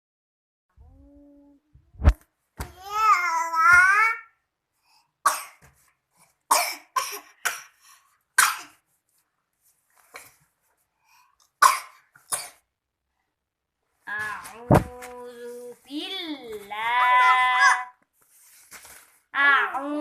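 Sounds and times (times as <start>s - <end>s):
child coughing: 5.3s - 5.6s, 6.5s - 7.8s, 8.4s - 8.8s, 11.6s - 12.6s.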